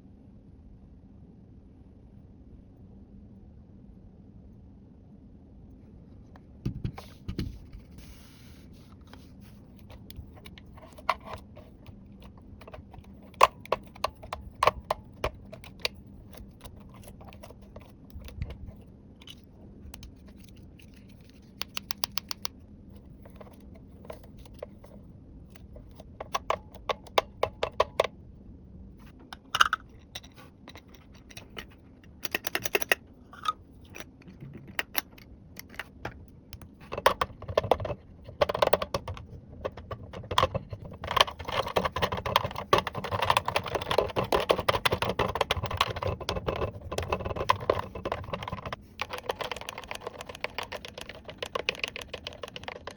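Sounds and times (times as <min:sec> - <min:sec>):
plastic toy pieces clicking: 0:29.4 - 0:33.0, 0:39.8 - 0:52.9.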